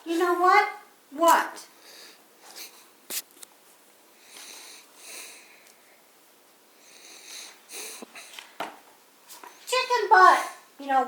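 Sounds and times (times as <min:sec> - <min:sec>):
person breathing through nose: 0:01.8 - 0:02.9, 0:04.2 - 0:06.0, 0:06.8 - 0:08.5.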